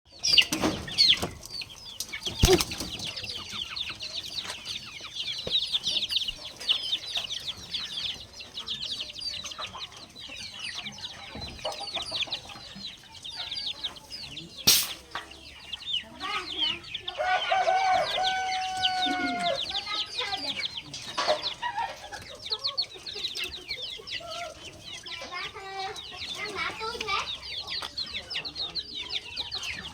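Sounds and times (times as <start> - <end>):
chickens cheeping and clucking: 0.1 - 29.9
sharp click: 14.7 - 15.1.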